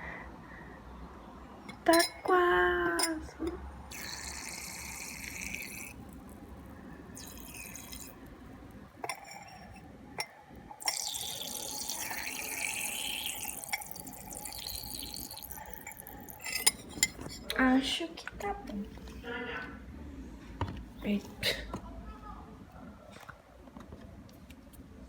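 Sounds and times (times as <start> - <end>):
liquid pouring into cup: 3.9 - 9.8, 10.8 - 17.3.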